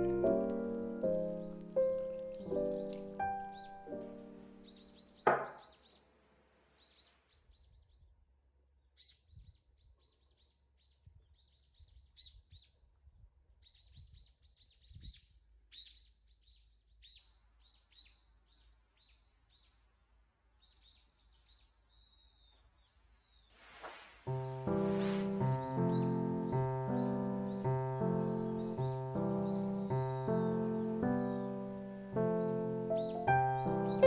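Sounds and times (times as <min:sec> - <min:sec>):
small birds chirping: 0:00.0 - 0:06.1, 0:13.6 - 0:34.0.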